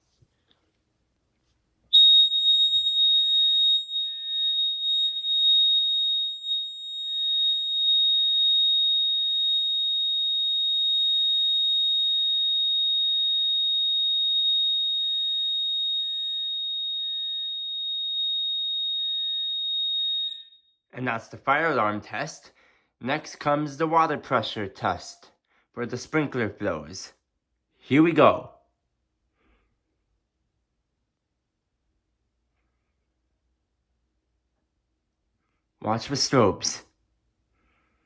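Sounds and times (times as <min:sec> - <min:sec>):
fire alarm tone: 0:01.9 - 0:20.9.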